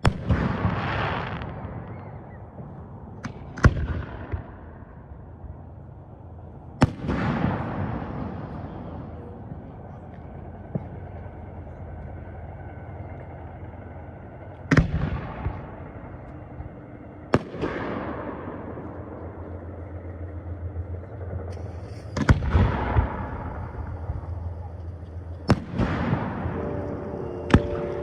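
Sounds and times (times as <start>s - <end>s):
fireworks bursting with sharp bangs: 0.0s - 4.5s, 6.8s - 8.6s, 17.3s - 18.3s, 21.5s - 28.0s.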